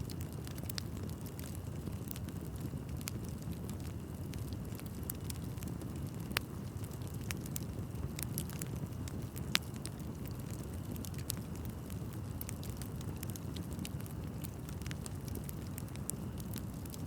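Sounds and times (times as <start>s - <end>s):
bonfire crackling and popping: 0.0s - 17.0s.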